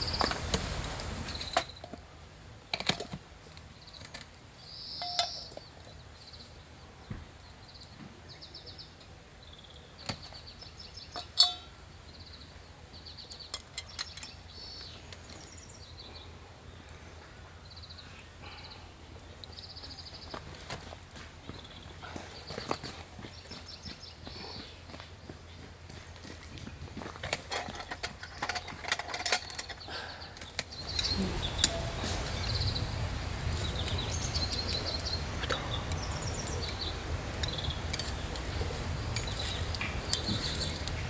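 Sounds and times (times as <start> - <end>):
small birds trilling: 0.0 - 0.5, 3.7 - 25.7, 27.7 - 41.0.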